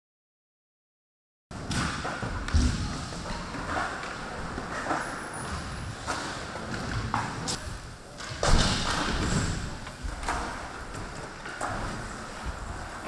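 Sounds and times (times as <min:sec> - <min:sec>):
wheels rolling and scraping: 0:01.6 - 0:13.0.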